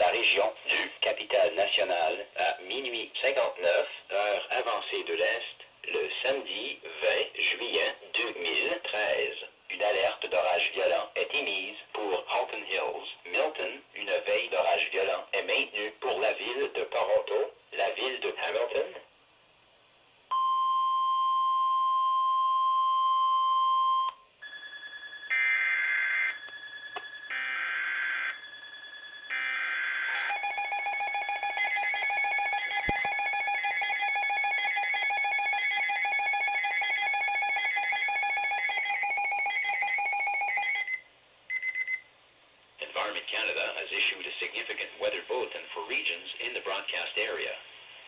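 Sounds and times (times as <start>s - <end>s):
steady beep: 20.3s - 42.1s
screeching data noise: 24.4s - 34.2s
pulsing multi-tone attention signal: 24.4s - 42.0s.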